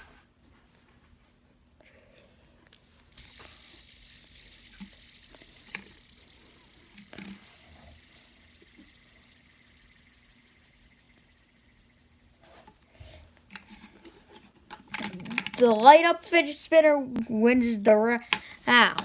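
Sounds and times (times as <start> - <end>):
fidget spinner whirring: 1.6 - 16.6.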